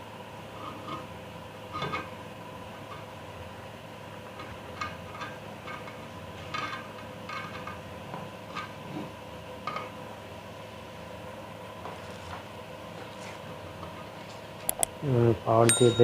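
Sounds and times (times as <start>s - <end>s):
electrical hum: 0.0s - 16.0s
small clicks of parts and wires: 14.6s - 14.9s.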